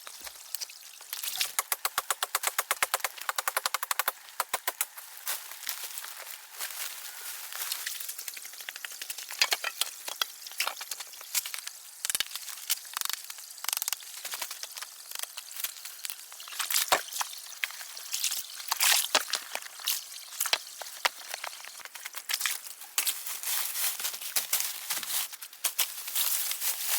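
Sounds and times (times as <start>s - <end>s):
water drips: 0.0s - 4.5s
water pattering and trickling: 0.0s - 4.9s, 7.6s - 22.7s.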